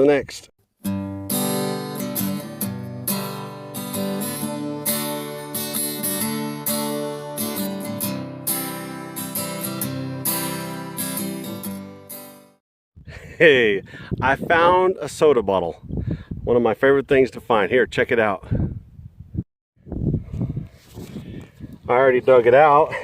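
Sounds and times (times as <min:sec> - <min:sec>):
acoustic guitar strumming chords: 0:00.8 - 0:12.6.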